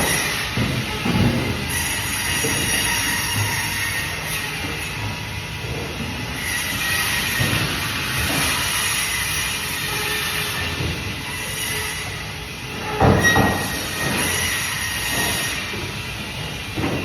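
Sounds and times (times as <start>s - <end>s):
band saw cutting fish: 0.0s - 1.1s, 1.7s - 5.6s, 6.3s - 16.0s.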